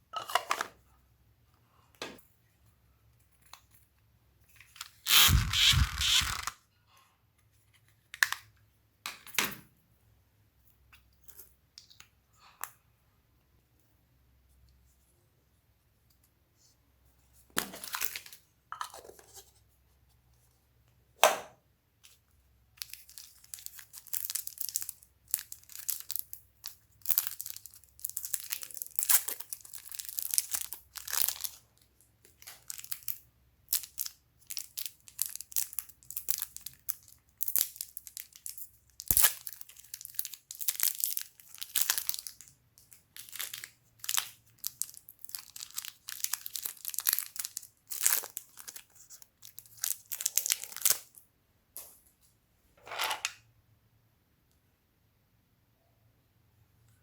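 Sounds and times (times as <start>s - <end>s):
slime squishing and popping: 5.1s - 6.5s.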